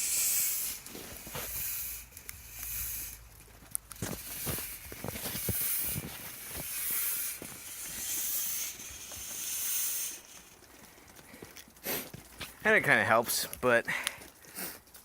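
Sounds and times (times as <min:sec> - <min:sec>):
fog machine hissing: 0:00.0 - 0:11.0.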